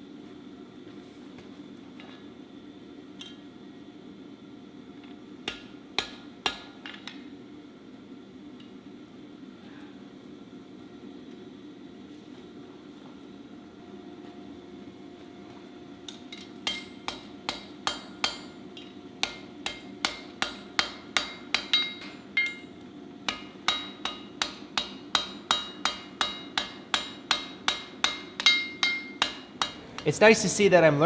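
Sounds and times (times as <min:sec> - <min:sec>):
hammer striking steel on anvil: 0:05.5 - 0:06.8, 0:16.3 - 0:22.7, 0:23.3 - 0:30.5.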